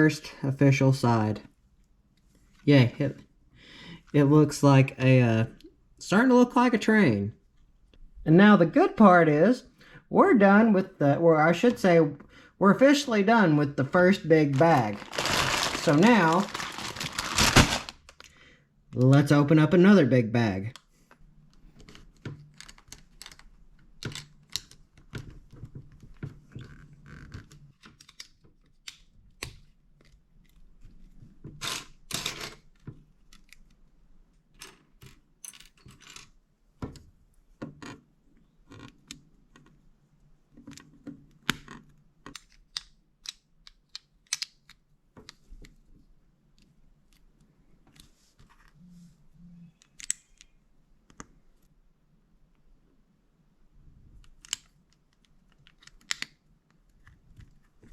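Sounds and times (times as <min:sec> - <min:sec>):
plastic bag rustling: 0:13.9 - 0:18.2.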